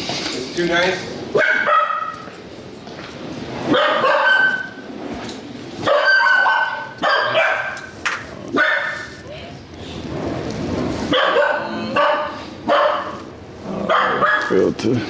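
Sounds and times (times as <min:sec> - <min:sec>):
dog barking and yipping: 0:01.3 - 0:02.3, 0:03.7 - 0:04.8, 0:05.8 - 0:09.2, 0:11.0 - 0:14.6.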